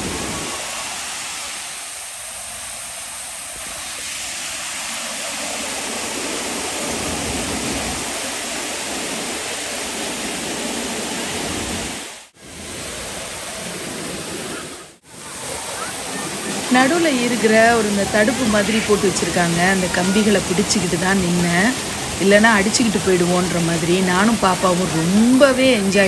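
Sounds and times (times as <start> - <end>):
waterfall pouring: 2.8 - 26.0.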